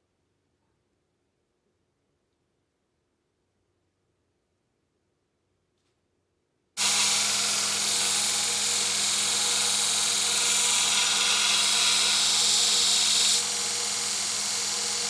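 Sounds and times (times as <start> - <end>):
power grinder grinding steel: 6.8 - 15.0.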